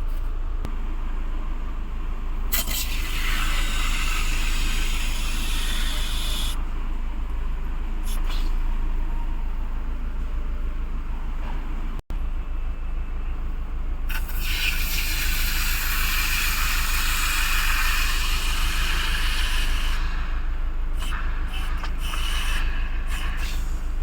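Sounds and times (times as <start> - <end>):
steady low hum: 0.0 - 24.0
pressurised spray hissing: 2.5 - 6.6, 14.1 - 20.4, 21.0 - 24.0.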